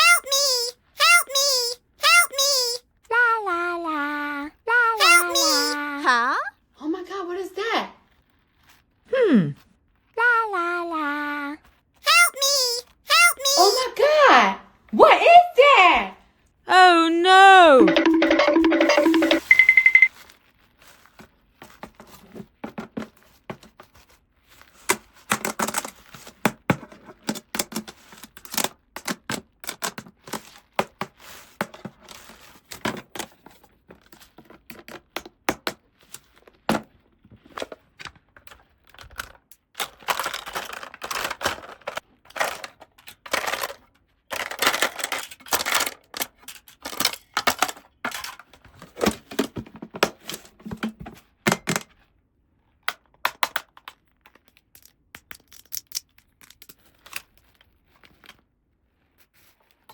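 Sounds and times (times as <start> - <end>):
plastic toy pieces clicking: 17.8 - 20.1, 52.9 - 56.8.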